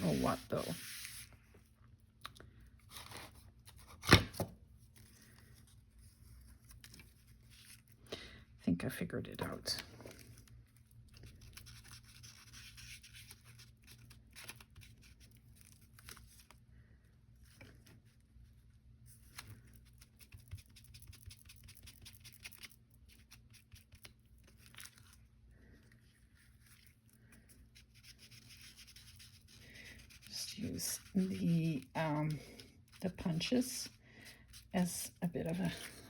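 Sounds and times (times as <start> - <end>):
paper rustling: 0.0 - 1.4.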